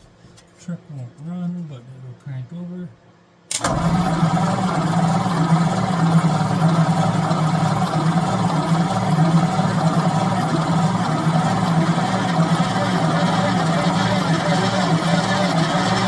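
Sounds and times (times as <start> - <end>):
engine cranking on starter: 3.5 - 16.0.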